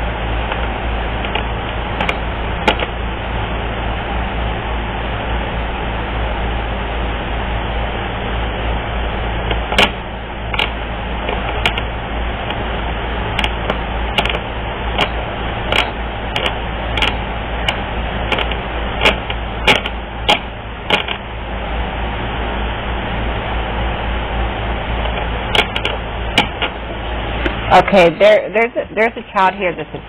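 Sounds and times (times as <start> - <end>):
steady background hum and hiss: 0.0 - 30.0
sharp clicks and taps: 0.5 - 2.9, 9.5 - 11.9, 13.4 - 14.4, 15.0 - 21.2, 25.0 - 26.8.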